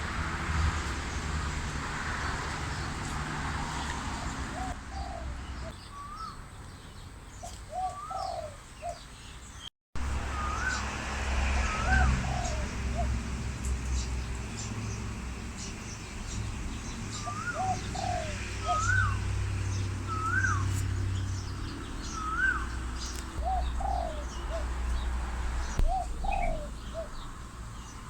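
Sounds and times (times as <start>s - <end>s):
dove cooing: 4.2s - 6.3s, 7.4s - 9.0s, 11.6s - 13.3s, 17.1s - 19.3s, 20.0s - 20.8s, 22.0s - 27.5s.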